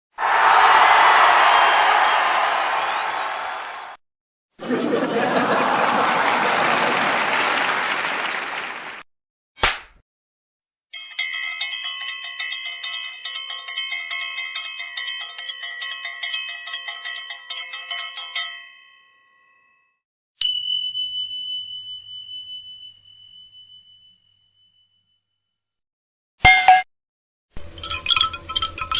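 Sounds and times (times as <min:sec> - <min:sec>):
bell ringing rapidly: 0:10.9 - 0:19.8, 0:27.7 - 0:28.9.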